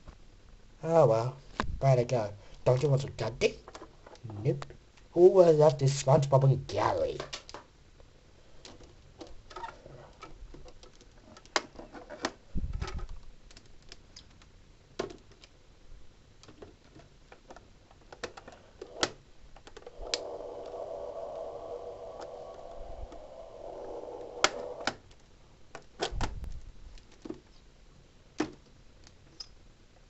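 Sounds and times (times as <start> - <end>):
toys clicking and knocking: 16.4 - 26.2
steady multi-tone hum: 18.4 - 26.0.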